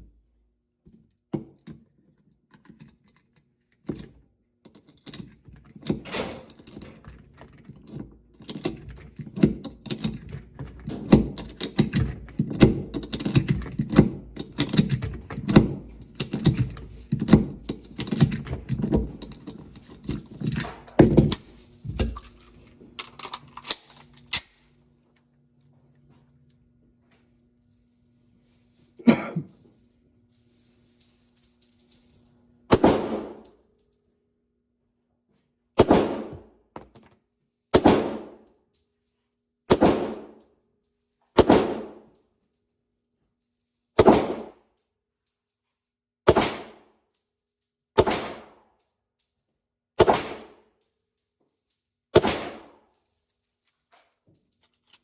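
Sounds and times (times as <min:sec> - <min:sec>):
pistol shots echoing in a room: 0:32.7 - 0:33.5, 0:35.8 - 0:36.6, 0:37.8 - 0:38.5, 0:39.7 - 0:40.4, 0:41.4 - 0:42.2, 0:44.0 - 0:44.6, 0:46.3 - 0:47.0, 0:48.0 - 0:48.8, 0:50.0 - 0:50.8, 0:52.2 - 0:53.0.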